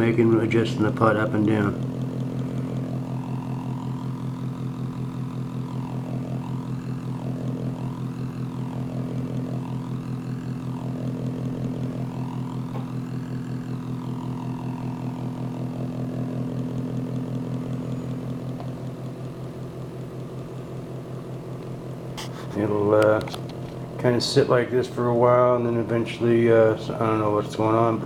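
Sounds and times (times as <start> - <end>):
high whining tones: 0.0 - 21.1
circuit buzzing pulsing hum: 0.0 - 28.0.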